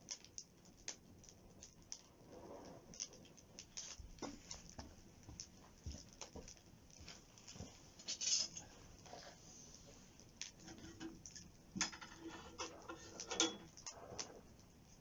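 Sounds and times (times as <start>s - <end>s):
campfire crackling and popping: 0.0s - 15.0s
faint hiss: 7.1s - 15.0s.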